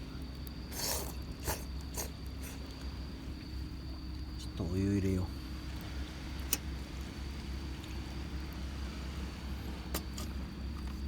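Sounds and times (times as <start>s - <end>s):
insect trill: 0.0s - 8.6s
campfire crackles: 5.0s - 11.0s.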